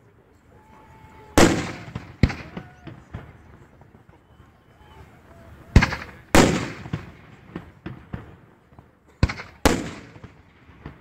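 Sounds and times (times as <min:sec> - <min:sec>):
fireworks bangs with echo: 0:01.4 - 0:04.2, 0:05.7 - 0:11.0.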